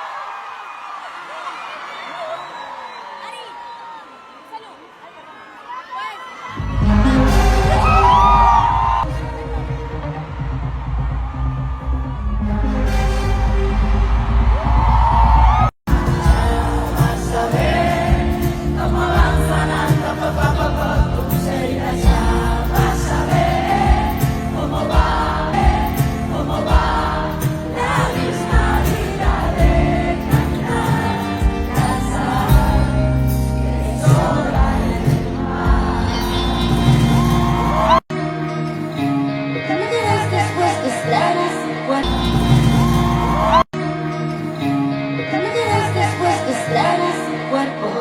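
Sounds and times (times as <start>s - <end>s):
pop song with vocals: 15.2s - 48.0s.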